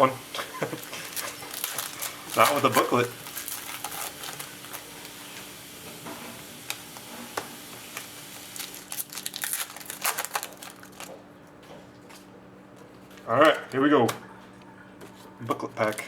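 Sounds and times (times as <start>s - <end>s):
card wrappers crinkling: 0.7s - 5.5s, 7.7s - 11.2s.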